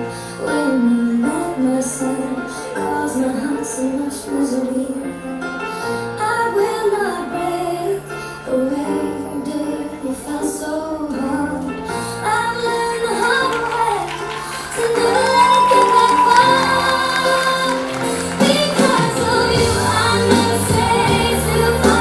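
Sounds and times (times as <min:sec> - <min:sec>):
woman singing: 0:00.4 - 0:22.0
band playing with percussion: 0:14.8 - 0:22.0.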